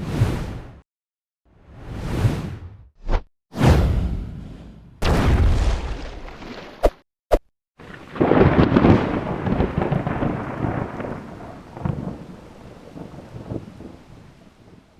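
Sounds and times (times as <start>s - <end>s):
rumbling crash: 5.0s - 6.7s.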